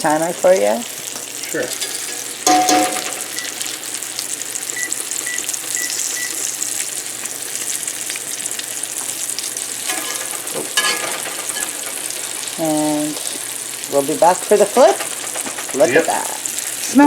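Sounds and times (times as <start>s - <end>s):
pancakes sizzling in a pan: 0.0s - 17.0s
kitchen timer beeps: 2.5s - 3.9s, 4.7s - 6.7s.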